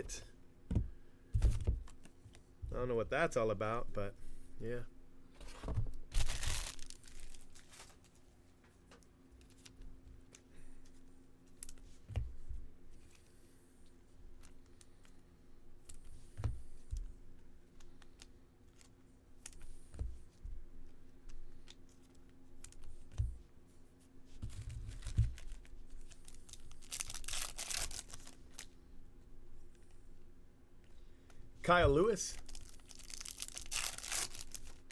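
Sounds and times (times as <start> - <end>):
foil wrapper tearing and crinkling: 6.1 - 8.0, 24.9 - 28.7, 32.4 - 34.9.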